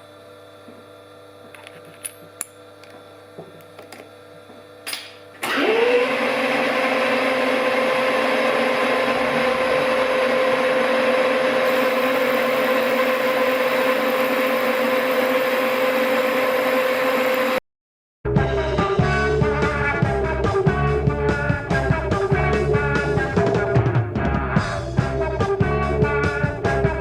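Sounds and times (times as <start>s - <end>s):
lathe motor whine and hum: 5.4s - 17.6s.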